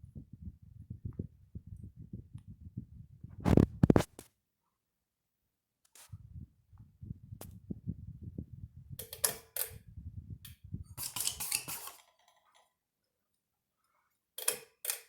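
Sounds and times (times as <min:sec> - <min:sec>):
ceiling fan rumble: 0:00.0 - 0:04.0, 0:06.1 - 0:09.0.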